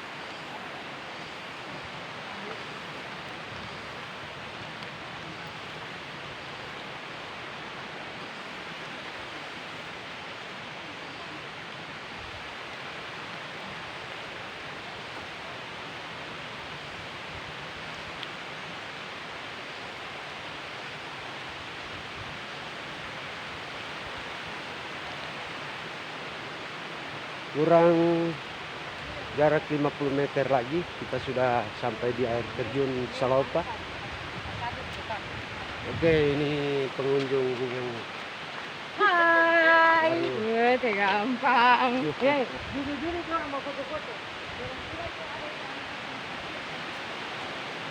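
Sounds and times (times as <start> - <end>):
waterfall rushing: 0.0 - 47.9.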